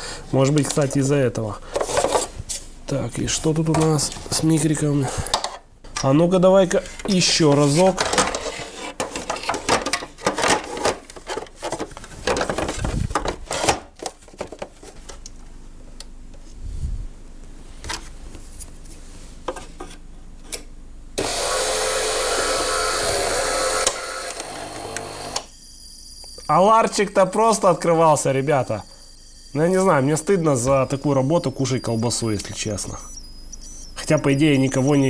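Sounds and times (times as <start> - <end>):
clicks and knocks of parts: 7.0 - 15.4
espresso machine motor whirring: 21.2 - 25.5.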